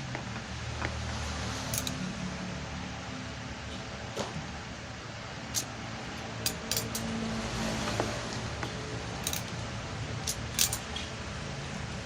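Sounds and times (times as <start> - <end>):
crimping tool metallic clicks: 1.8 - 2.0, 6.4 - 7.0, 9.2 - 9.6, 10.2 - 10.8.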